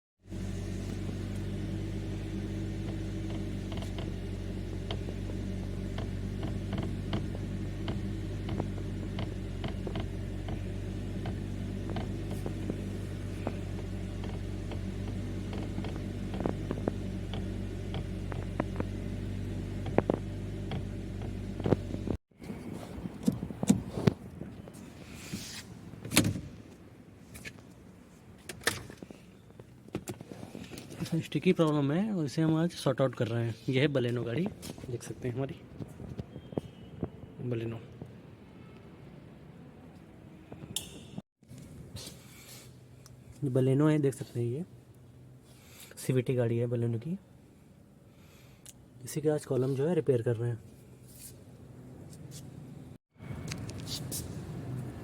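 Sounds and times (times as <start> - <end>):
steady low hum: 0.3 - 24.0
steering column clicking and creaking: 2.4 - 22.2.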